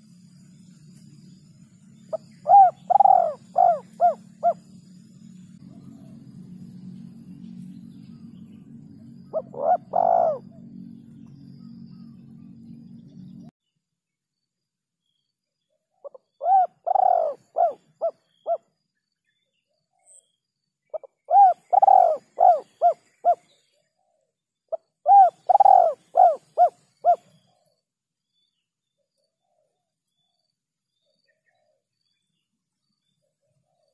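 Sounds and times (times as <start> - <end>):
dove cooing: 2.1 - 4.6, 9.2 - 10.7, 16.0 - 18.6, 20.9 - 23.5, 24.7 - 27.3.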